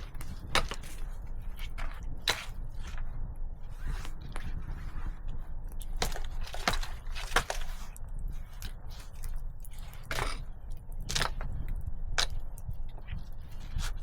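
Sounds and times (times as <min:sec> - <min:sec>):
dry wood cracking: 0:05.7 - 0:14.0.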